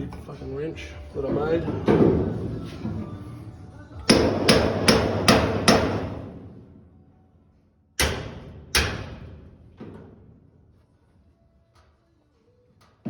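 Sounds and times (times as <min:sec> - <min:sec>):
hammer striking metal pin: 0:04.1 - 0:06.2, 0:08.0 - 0:09.3.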